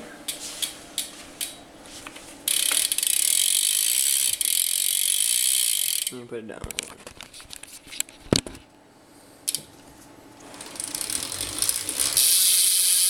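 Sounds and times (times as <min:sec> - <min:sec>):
bike hub pawls ratcheting: 0:02.5 - 0:06.2, 0:10.5 - 0:13.0.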